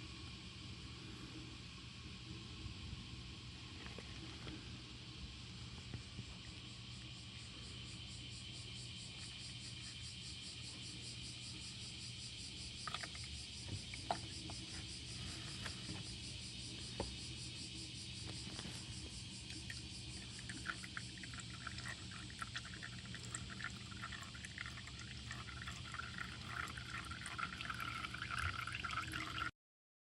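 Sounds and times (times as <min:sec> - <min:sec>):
oil pouring and trickling: 0:12.8 - 0:16.0, 0:18.2 - 0:29.5.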